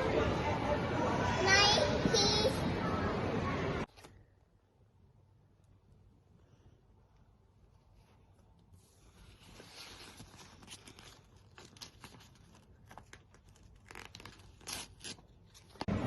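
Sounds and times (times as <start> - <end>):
rustling and crinkling handling noise: 7.7 - 15.9.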